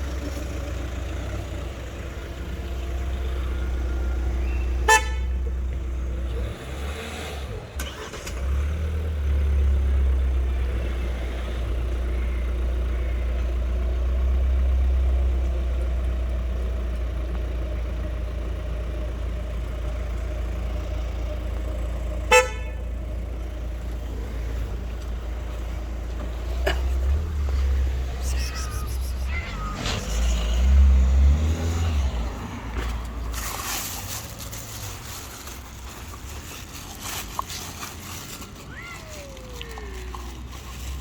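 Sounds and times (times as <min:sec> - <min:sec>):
street traffic rumble: 0:00.0 - 0:41.0
car horn toot: 0:04.8 - 0:05.4, 0:22.3 - 0:22.9, 0:28.2 - 0:29.8.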